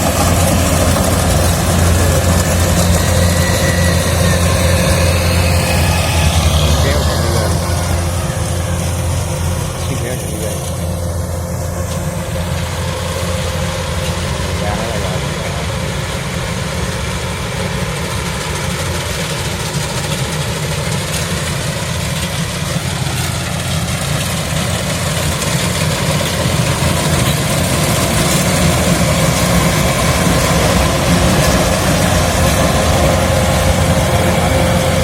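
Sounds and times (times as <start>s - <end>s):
diesel engine running: 0.0s - 35.0s.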